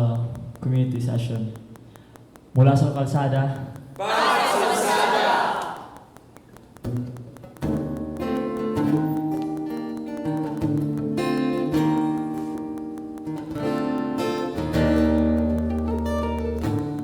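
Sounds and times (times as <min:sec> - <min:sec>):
acoustic guitar strumming chords: 0:06.8 - 0:17.0.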